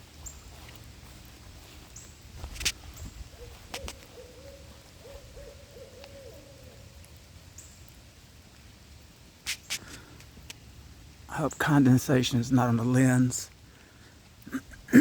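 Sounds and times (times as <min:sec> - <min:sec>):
owl hooting: 0:03.3 - 0:07.0.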